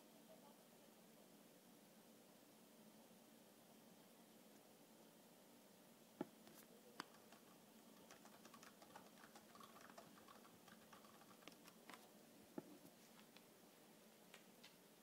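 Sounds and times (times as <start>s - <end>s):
typing on keyboard: 7.0s - 12.1s.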